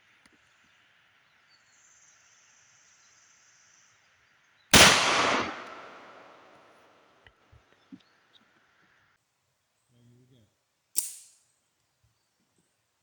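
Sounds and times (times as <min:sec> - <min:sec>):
pistol shot echoing: 0:04.8 - 0:06.7.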